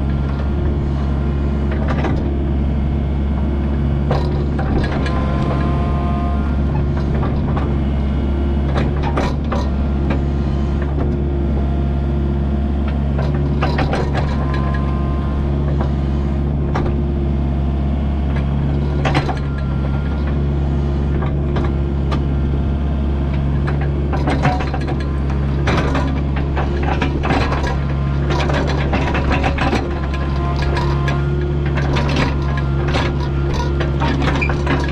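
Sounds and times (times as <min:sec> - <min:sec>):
excavator diesel engine running: 0:00.0 - 0:34.9
knocks and clatter: 0:08.7 - 0:10.2, 0:12.9 - 0:14.8, 0:18.3 - 0:19.6, 0:23.6 - 0:34.9.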